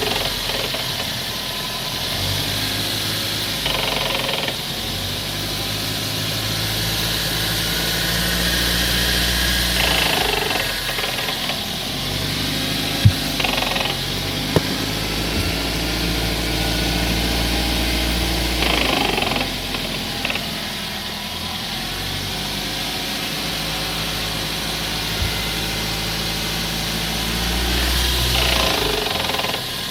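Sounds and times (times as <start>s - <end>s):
ratchet-like transmission noise: 3.6s - 4.7s, 28.3s - 29.8s
car low hum: 8.8s - 28.7s.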